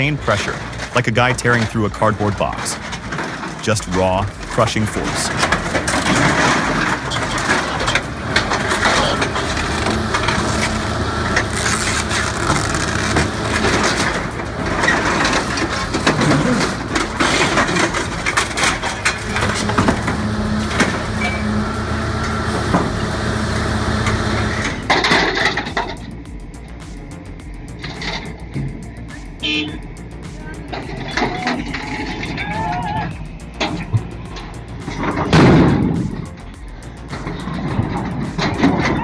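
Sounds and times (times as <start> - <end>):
diesel engine hum: 0.0 - 39.0
shears crushing and tearing steel: 0.4 - 28.8.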